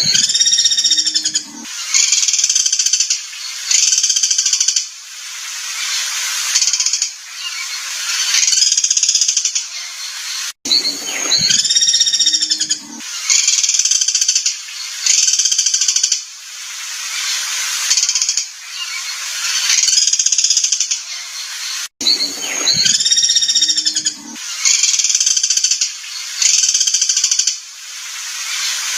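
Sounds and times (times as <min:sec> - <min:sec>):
tonal bird call: 0:00.0 - 0:01.7, 0:10.7 - 0:13.0, 0:22.0 - 0:24.4.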